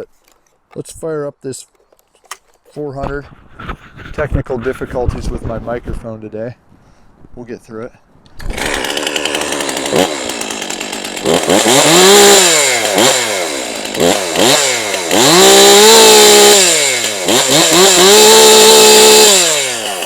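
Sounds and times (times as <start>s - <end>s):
chainsaw idling and revving: 8.4s - 20.0s.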